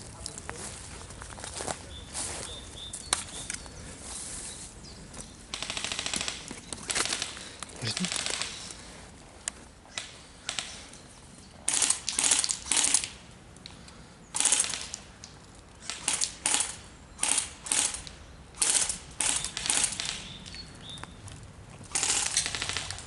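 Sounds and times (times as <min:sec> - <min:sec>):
airsoft guns firing bursts: 0:05.5 - 0:08.7, 0:11.7 - 0:13.2, 0:14.3 - 0:15.0, 0:15.8 - 0:20.4, 0:21.9 - 0:23.0.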